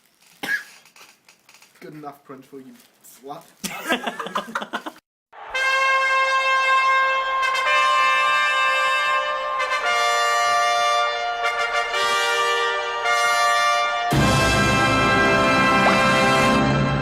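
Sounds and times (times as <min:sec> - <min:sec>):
slow brass melody: 0:05.6 - 0:17.0.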